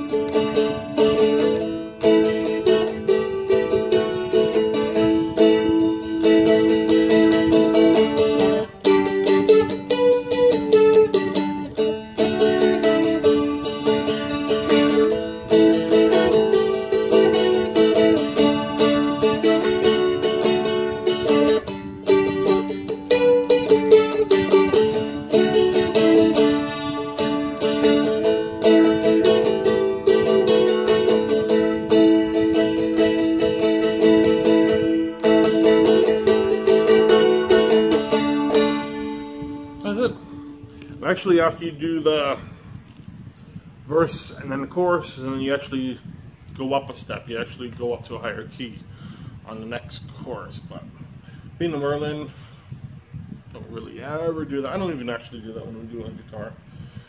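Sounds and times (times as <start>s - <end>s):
strummed dulcimer melody: 0.0s - 40.9s.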